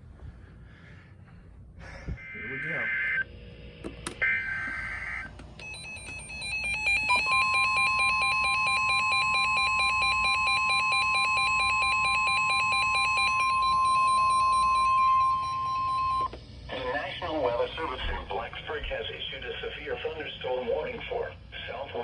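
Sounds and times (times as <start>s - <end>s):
steady alarm tone: 1.8s - 18.5s
warbling electronic alarm beep: 2.2s - 3.3s, 4.2s - 16.3s.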